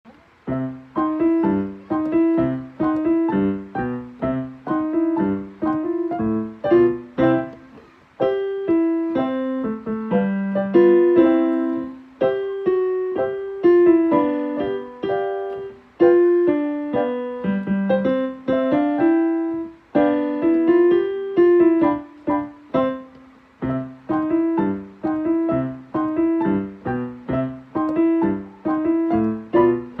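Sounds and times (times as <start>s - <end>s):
piano ensemble playing: 0.4s - 30.0s.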